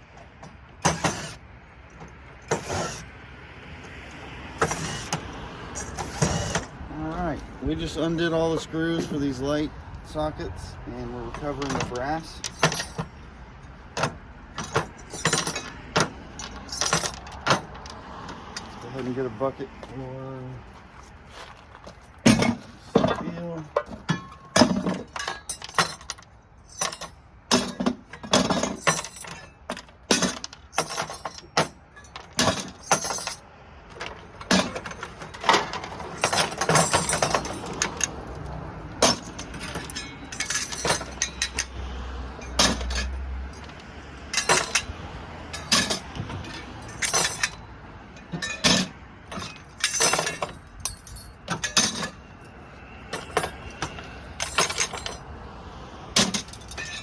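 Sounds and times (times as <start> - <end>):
small metal parts clinking: 11.2 - 13.3, 13.9 - 19.0, 21.4 - 41.8, 42.4 - 55.3, 56.2 - 57.0.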